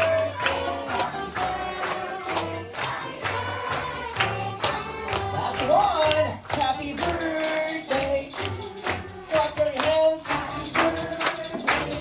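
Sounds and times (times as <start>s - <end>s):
percussion hits: 0.0s - 12.0s
person singing: 0.0s - 12.0s.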